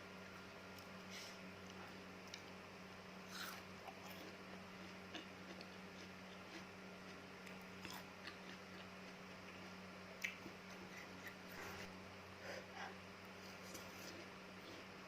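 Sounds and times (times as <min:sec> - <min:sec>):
low electrical hum: 0:00.0 - 0:15.0
chewing fruit crunches: 0:03.2 - 0:11.4.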